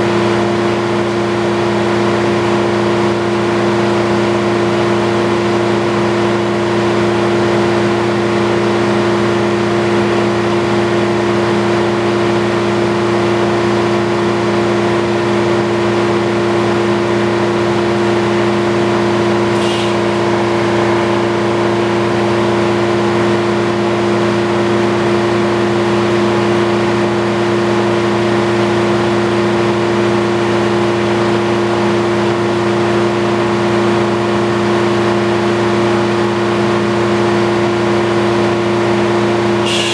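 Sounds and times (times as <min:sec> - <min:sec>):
circular sawmill humming: 0:38.2 - 0:39.9.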